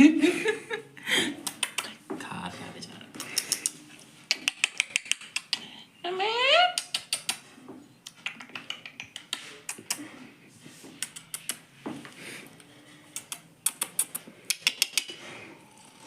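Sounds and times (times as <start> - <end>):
parrot beak cracking food: 6.8 - 7.4, 13.2 - 15.1.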